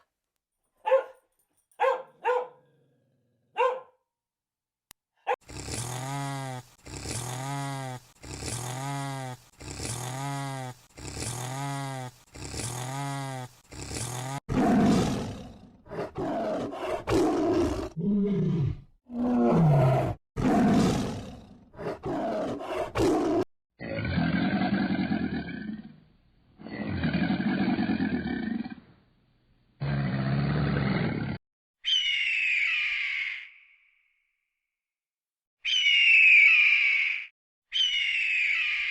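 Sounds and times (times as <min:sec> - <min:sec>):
deep rasping roars and growls: 0:05.5 - 0:26.0, 0:26.6 - 0:28.8, 0:29.8 - 0:31.4
pitched animal calls: 0:35.6 - 0:38.9.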